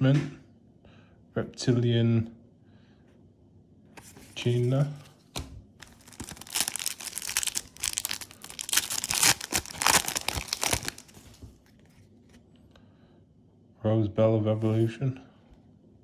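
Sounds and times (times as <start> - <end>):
foil wrapper tearing and crinkling: 5.8 - 11.4.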